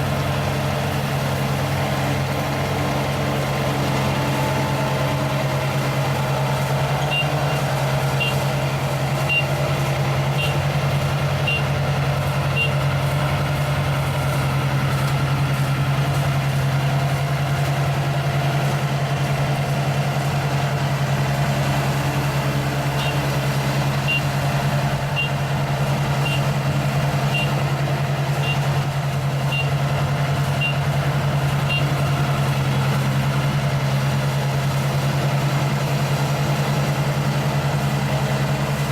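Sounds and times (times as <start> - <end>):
combine harvester engine running: 0.0 - 38.9
high warning beeper: 7.0 - 7.6, 9.2 - 9.6, 10.3 - 10.6, 11.4 - 11.7.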